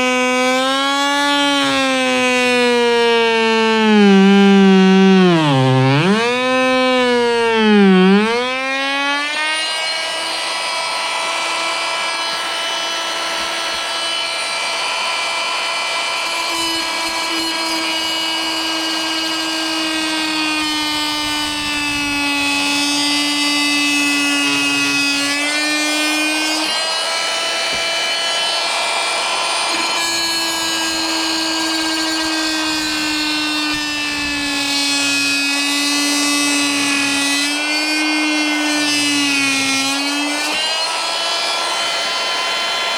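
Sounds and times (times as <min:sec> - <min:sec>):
multi-tool cutting stone: 0:00.0 - 0:42.9.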